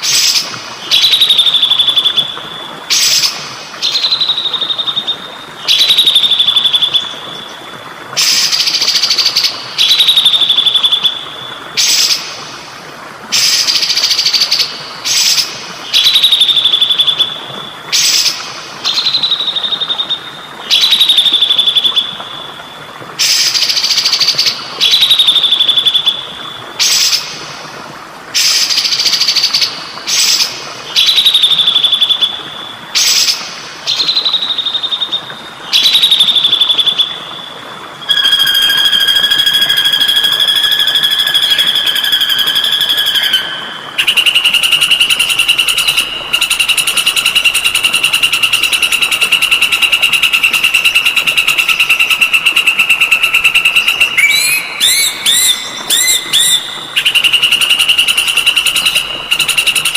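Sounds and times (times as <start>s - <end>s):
water trickling: 0.0s - 59.9s
songbird calling and whistling: 0.1s - 2.2s, 38.0s - 59.9s.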